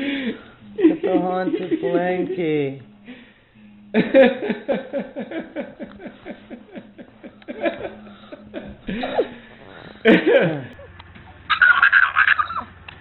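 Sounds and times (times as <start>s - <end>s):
person laughing: 0.8s - 2.4s, 4.0s - 10.9s.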